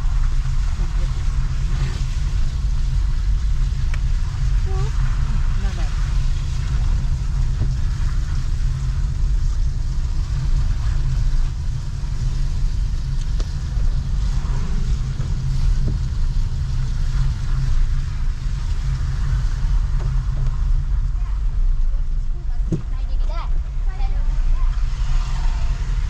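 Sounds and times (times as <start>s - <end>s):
rain hiss: 0.0s - 26.0s
traffic rumble: 0.0s - 26.0s.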